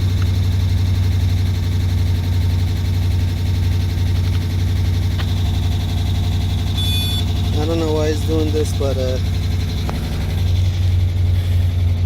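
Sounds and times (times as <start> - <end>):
car engine idling: 0.0 - 12.0.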